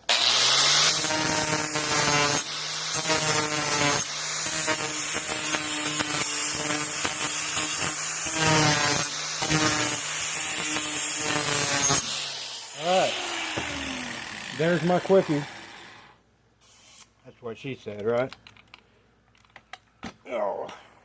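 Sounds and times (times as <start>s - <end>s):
grinder scraping metal blade: 0.0s - 16.0s
electric grinder motor whine: 0.0s - 16.1s.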